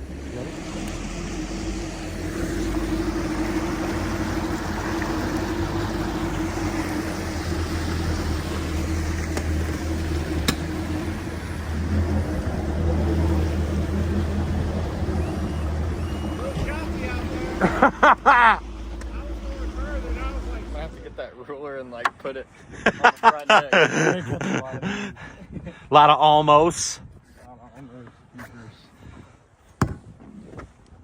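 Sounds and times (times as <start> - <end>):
outboard motor running: 0.0 - 21.3
water noise: 0.0 - 27.0
wind: 0.0 - 31.0.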